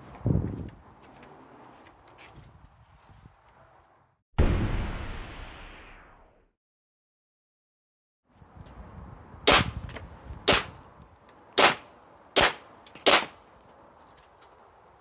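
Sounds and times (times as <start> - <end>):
airsoft pistol shots: 10.5 - 10.7, 11.6 - 13.4.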